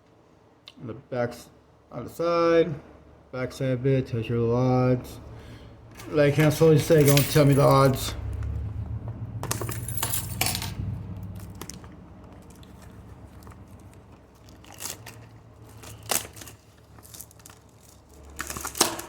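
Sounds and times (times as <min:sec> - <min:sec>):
foil packs crinkling and tearing: 0:11.4 - 0:19.0.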